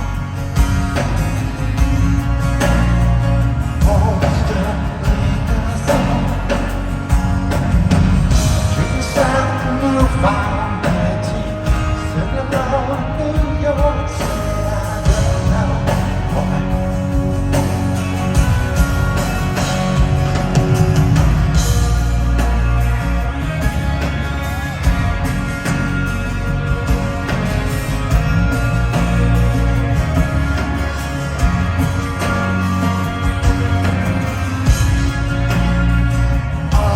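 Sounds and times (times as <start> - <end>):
rock band playing live: 0.0 - 36.9
person singing: 3.7 - 6.8, 8.6 - 17.3, 36.4 - 36.9.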